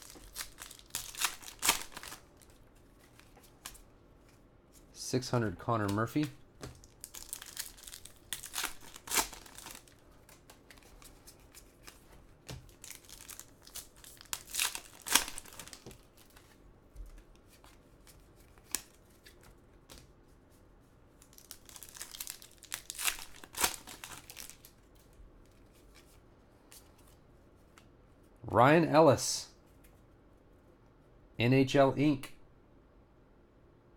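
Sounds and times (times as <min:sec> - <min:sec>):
plastic wrappers crinkling and tearing: 0:00.0 - 0:03.8, 0:05.8 - 0:16.5, 0:21.2 - 0:26.1.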